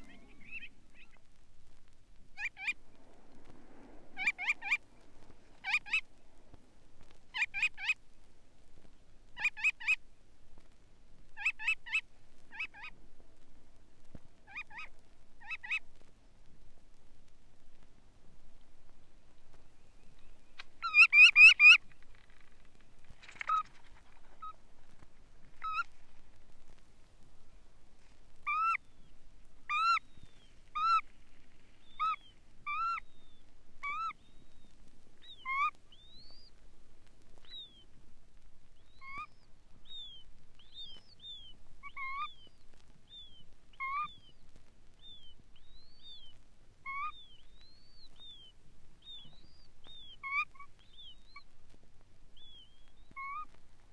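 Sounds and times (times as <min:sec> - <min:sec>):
bird calling: 0:00.0 - 0:01.2, 0:02.3 - 0:02.9, 0:04.0 - 0:06.1, 0:07.3 - 0:08.0, 0:11.4 - 0:13.0, 0:14.5 - 0:15.8, 0:19.7 - 0:24.6, 0:25.5 - 0:26.0, 0:28.4 - 0:36.6, 0:37.4 - 0:38.0, 0:38.8 - 0:51.6, 0:52.3 - 0:53.6
thin high whistled bird notes: 0:38.8 - 0:51.5.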